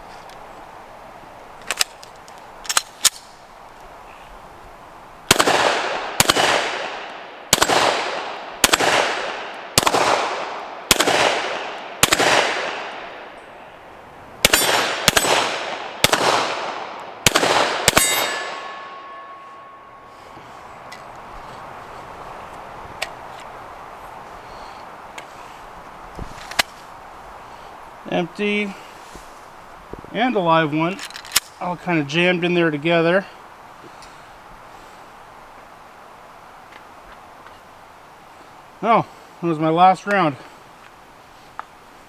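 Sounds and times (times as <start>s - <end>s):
pistol shots echoing: 5.3s - 13.3s, 14.4s - 19.2s.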